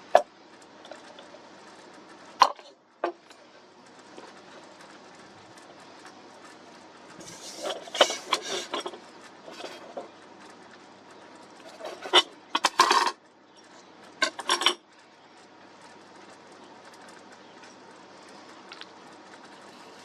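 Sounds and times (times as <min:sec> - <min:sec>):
hard objects clattering and clinking: 0:04.0 - 0:10.6, 0:11.4 - 0:14.8.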